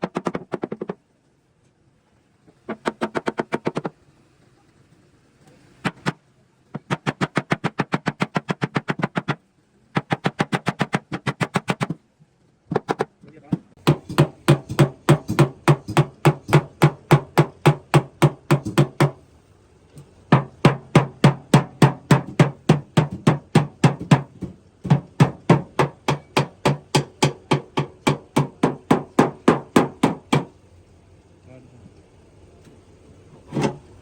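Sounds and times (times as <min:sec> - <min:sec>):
hammer beating car body metal: 0:00.0 - 0:01.0, 0:02.7 - 0:03.9, 0:05.8 - 0:06.2, 0:06.8 - 0:09.4, 0:10.0 - 0:12.0, 0:12.7 - 0:13.1, 0:13.8 - 0:19.2, 0:20.3 - 0:30.6.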